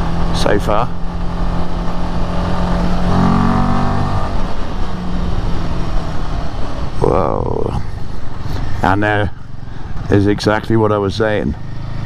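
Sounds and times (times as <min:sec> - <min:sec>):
rushing wind noise: 0:00.0 - 0:09.2
motorcycle engine at speed: 0:00.0 - 0:12.0.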